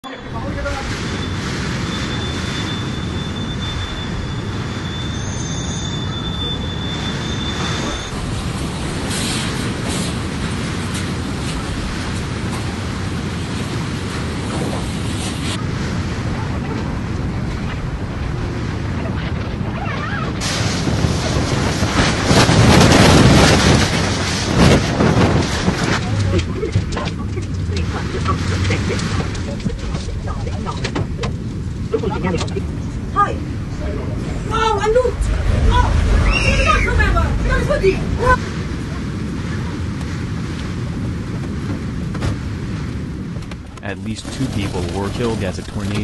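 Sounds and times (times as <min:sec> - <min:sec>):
strong wind on microphone: 0:00.0 - 0:46.0.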